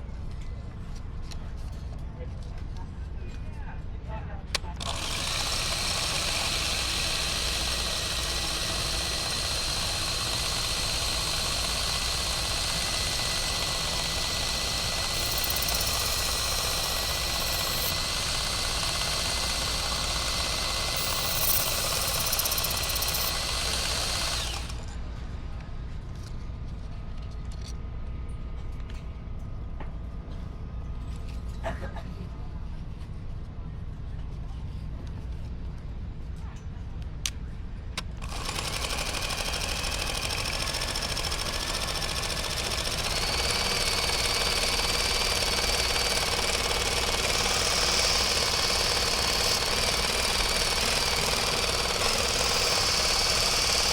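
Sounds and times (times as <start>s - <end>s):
knife sharpener grinding blade: 11.0s - 24.6s.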